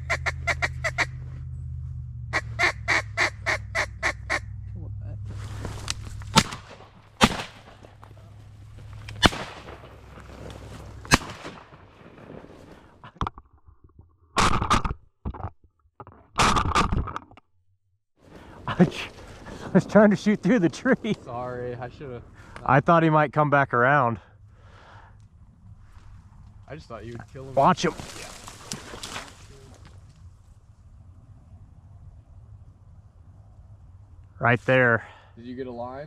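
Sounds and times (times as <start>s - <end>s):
duck quacks: 0.0s - 1.2s, 2.3s - 4.5s
shotgun shots: 6.3s - 8.1s, 9.0s - 10.4s, 11.0s - 12.7s.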